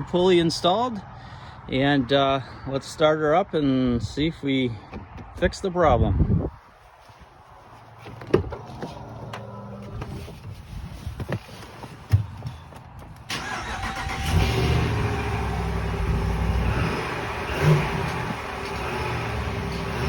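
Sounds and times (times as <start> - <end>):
engine starting and idling: 13.2 - 20.0.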